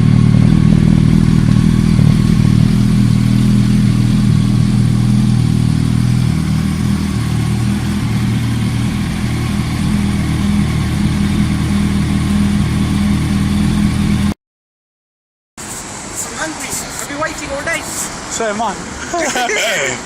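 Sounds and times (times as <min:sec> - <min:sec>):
motorcycle engine running: 0:00.0 - 0:14.4.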